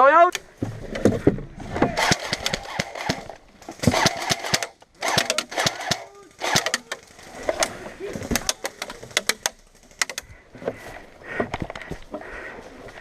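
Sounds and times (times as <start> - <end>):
airsoft guns popping: 2.0 - 10.2.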